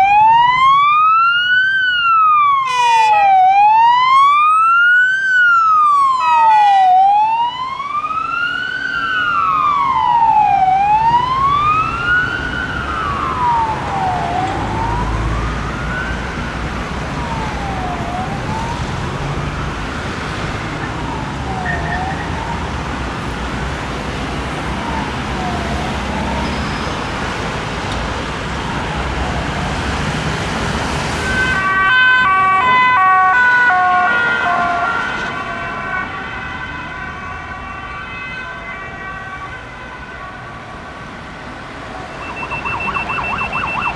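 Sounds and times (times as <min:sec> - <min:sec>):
siren wailing in sweeps: 0:00.0 - 0:16.6, 0:17.2 - 0:19.2, 0:20.6 - 0:22.8, 0:31.2 - 0:40.7, 0:41.8 - 0:43.9
siren with alternating tones: 0:00.0 - 0:19.2, 0:20.6 - 0:22.8, 0:31.2 - 0:40.9, 0:41.8 - 0:43.9
traffic noise: 0:00.0 - 0:43.9.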